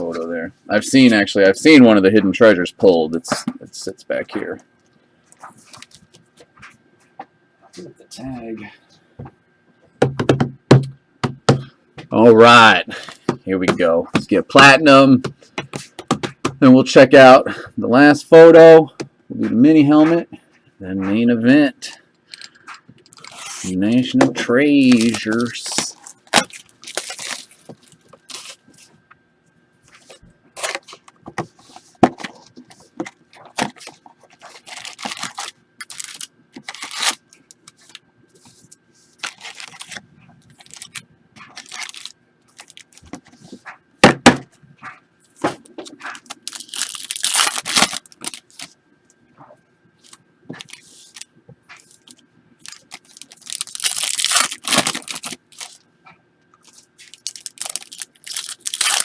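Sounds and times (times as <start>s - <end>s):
packaging clicks and scrapes: 22.3s - 23.8s, 30.6s - 38.0s, 38.6s - 43.6s, 45.9s - 48.8s, 50.0s - 55.8s, 56.6s - 59.0s
wrapper tearing and crinkling: 24.8s - 28.6s, 34.4s - 37.9s, 39.2s - 43.0s, 46.2s - 48.7s, 52.0s - 55.8s, 56.7s - 59.0s.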